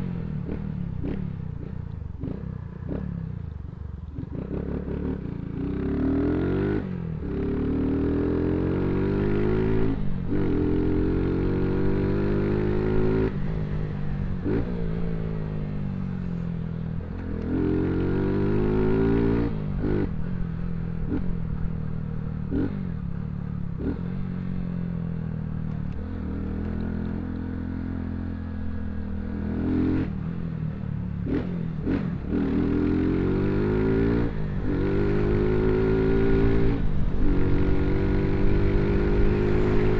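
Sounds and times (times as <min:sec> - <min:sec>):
motorcycle engine revving: 0:00.0 - 0:03.5, 0:17.2 - 0:39.9.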